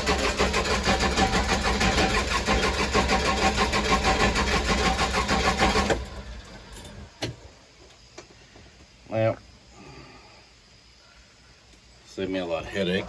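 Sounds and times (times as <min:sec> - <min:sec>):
diesel engine cranking on starter: 0:00.0 - 0:07.4.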